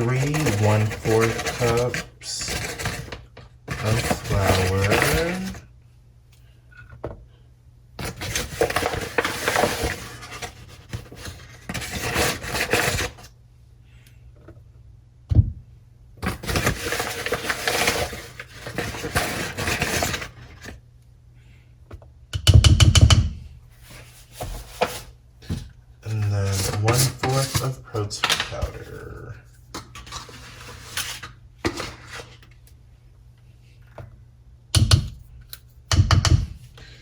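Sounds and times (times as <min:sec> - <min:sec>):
flour scraping and rustling: 0:00.0 - 0:03.2, 0:03.8 - 0:05.6.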